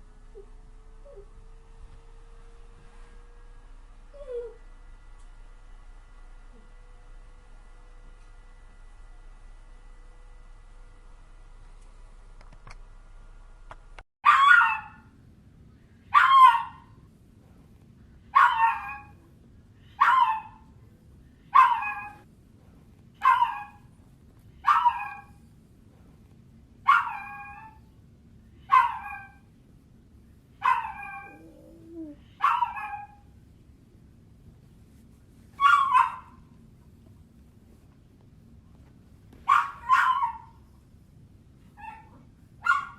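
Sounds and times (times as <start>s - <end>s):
dog whining yelps: 4.1s - 4.6s, 14.2s - 15.0s, 16.1s - 16.9s, 18.3s - 19.2s, 19.9s - 20.6s, 21.5s - 22.2s, 23.2s - 23.8s, 24.6s - 25.3s, 26.9s - 27.8s, 28.7s - 29.4s, 30.6s - 33.2s, 35.6s - 36.4s, 39.5s - 40.6s, 41.7s - 42.9s.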